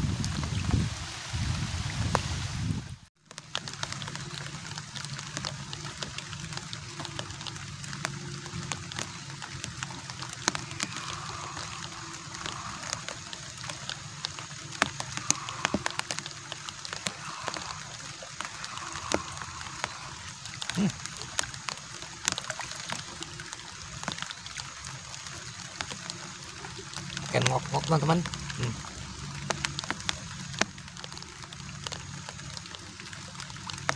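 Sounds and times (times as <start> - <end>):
sharp clicks and drips: 3.2 - 33.9
steady hiss: 9.8 - 24.0
rising-and-falling calls: 10.3 - 21.0.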